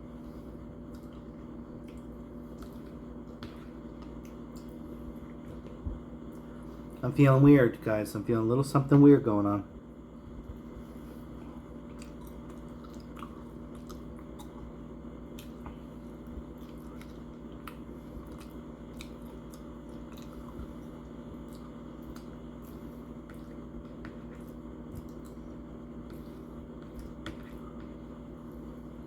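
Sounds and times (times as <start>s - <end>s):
person chewing: 0.8s - 7.0s, 11.3s - 28.0s.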